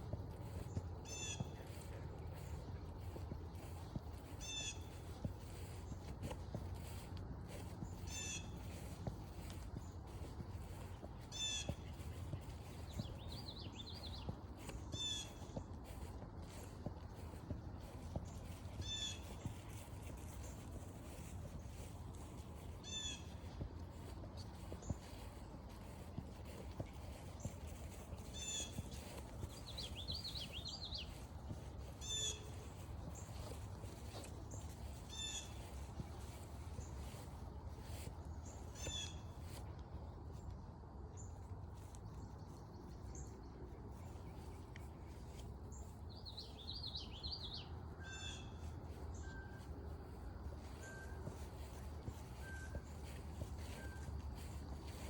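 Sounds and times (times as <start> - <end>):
low outdoor rumble: 0.0 - 55.0.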